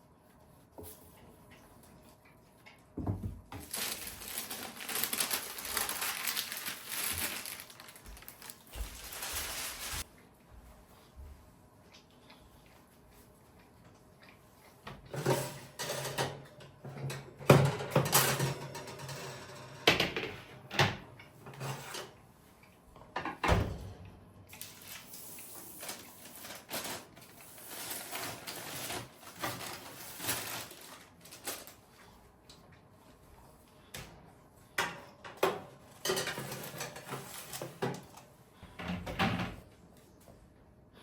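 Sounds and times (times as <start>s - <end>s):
rustling: 3.6s - 10.1s.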